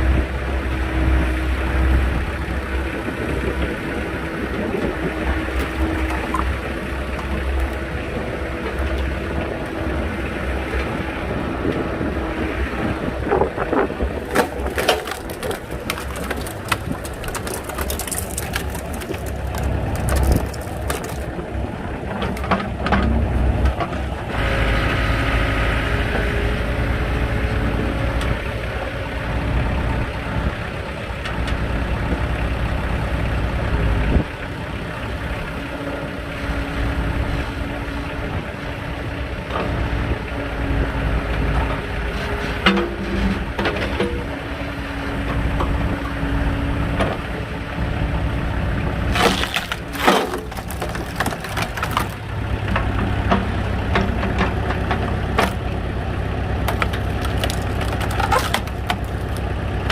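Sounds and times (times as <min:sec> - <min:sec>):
wood cracking and crunching: 0:01.9 - 0:24.1, 0:49.0 - 0:59.9.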